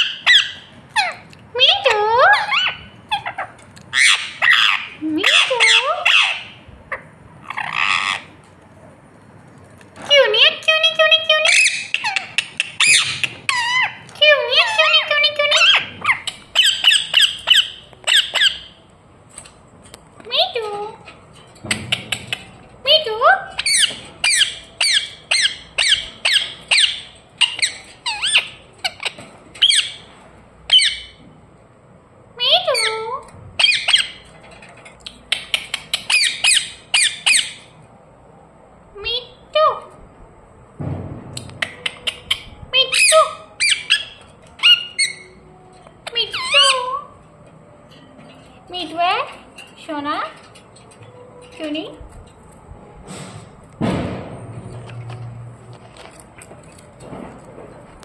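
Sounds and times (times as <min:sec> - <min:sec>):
parrot squawking: 0:00.0 - 0:08.4, 0:10.0 - 0:18.8, 0:21.9 - 0:30.1, 0:30.7 - 0:31.2, 0:32.4 - 0:37.8, 0:41.6 - 0:47.3.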